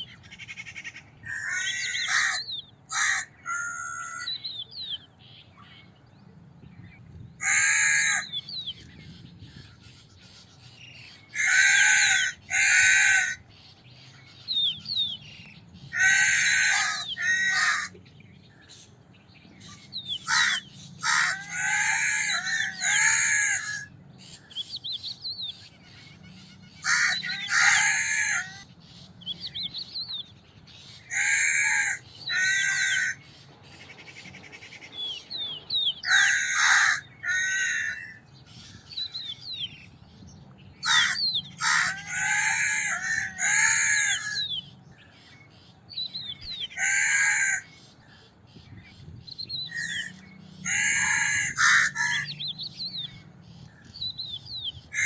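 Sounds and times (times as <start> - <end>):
small birds chirping: 0.0 - 55.0
crows cawing: 0.2 - 4.4, 7.4 - 8.5, 11.3 - 13.5, 15.9 - 18.0, 19.6 - 24.5, 25.6 - 28.7, 30.9 - 33.3, 36.0 - 39.1, 40.8 - 44.6, 46.6 - 47.9, 49.7 - 52.5.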